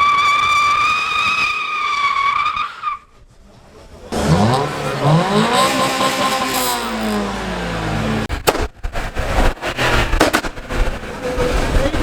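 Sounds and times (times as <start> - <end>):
car engine revs falling: 4.1 - 12.0
exhaust bangs and crackling pops: 4.1 - 12.0.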